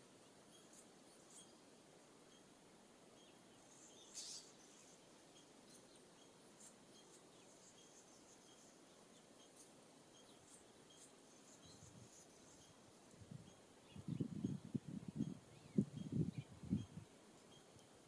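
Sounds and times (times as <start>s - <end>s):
faint bird chirps: 0.0s - 18.0s.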